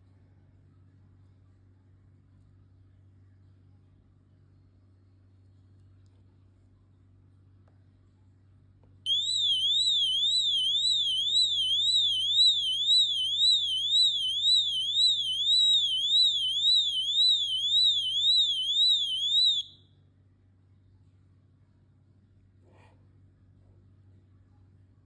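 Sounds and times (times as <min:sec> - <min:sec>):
high warbling alarm tone: 0:09.1 - 0:19.7.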